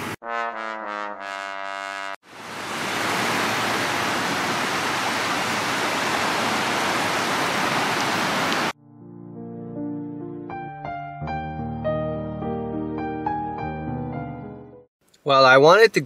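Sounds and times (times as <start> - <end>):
soft piano music: 8.8 - 14.9.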